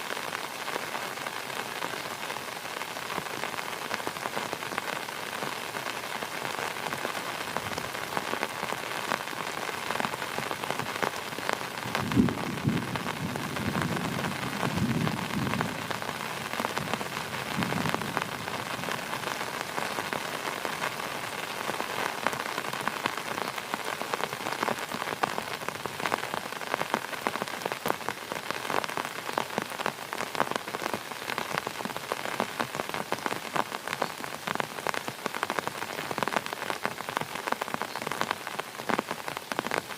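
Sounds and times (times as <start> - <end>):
heavy rain falling: 0.0 - 39.9
thunder rumbling: 11.9 - 19.0.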